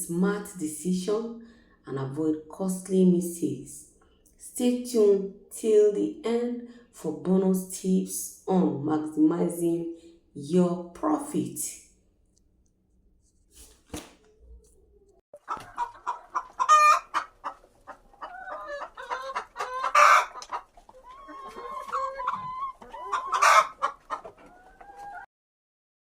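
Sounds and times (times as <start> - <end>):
chickens clucking: 14.2 - 25.3
harsh chicken calls: 15.4 - 25.3.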